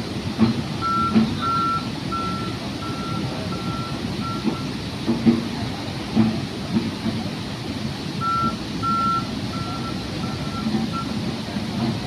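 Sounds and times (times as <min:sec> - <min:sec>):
reversing alarm beeping: 0:00.8 - 0:04.7, 0:08.2 - 0:11.2.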